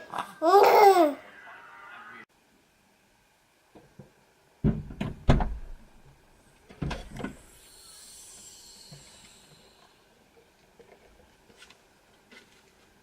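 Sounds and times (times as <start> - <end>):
thumps and knocks: 3.8 - 5.8
faint hiss: 5.8 - 13.0.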